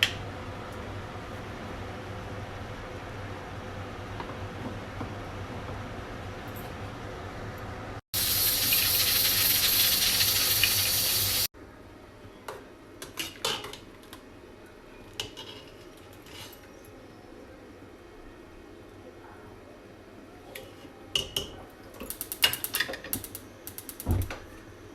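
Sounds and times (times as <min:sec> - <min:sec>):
low kitchen hum: 0:00.0 - 0:24.9
loud even hiss: 0:08.2 - 0:11.5.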